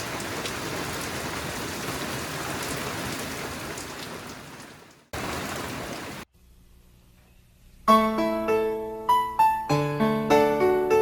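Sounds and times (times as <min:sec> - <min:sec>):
steady rain falling: 0:00.0 - 0:06.3.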